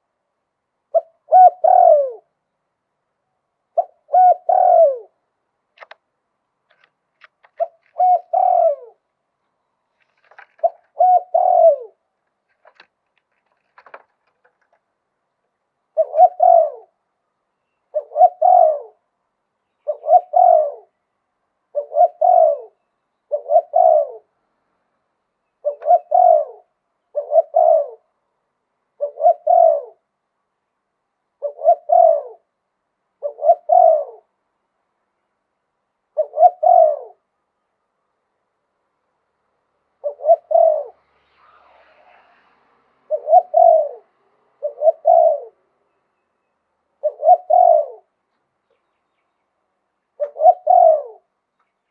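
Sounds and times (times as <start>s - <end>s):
dove cooing: 0.9s - 2.3s, 3.7s - 5.2s, 6.7s - 9.1s, 10.0s - 14.8s, 15.9s - 17.0s, 17.9s - 19.1s, 19.8s - 21.0s, 21.7s - 24.3s, 25.6s - 28.2s, 29.0s - 30.1s, 31.4s - 32.5s, 33.2s - 34.4s, 36.1s - 37.3s, 40.0s - 45.8s, 47.0s - 48.2s, 50.1s - 51.3s.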